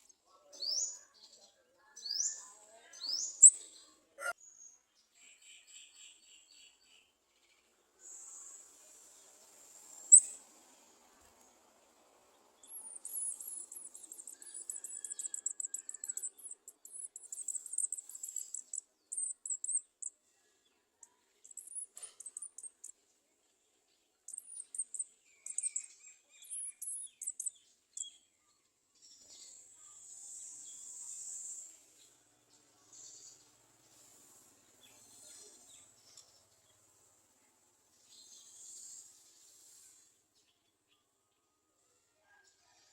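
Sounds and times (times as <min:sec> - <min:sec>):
steady high-pitched hiss: 0:08.0 - 0:11.5
sunbirds twittering: 0:12.3 - 0:20.1.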